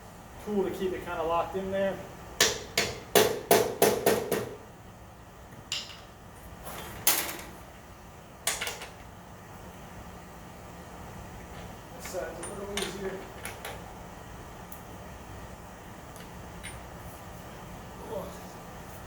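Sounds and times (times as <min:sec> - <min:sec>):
metal tools knocking: 0:12.0 - 0:13.8.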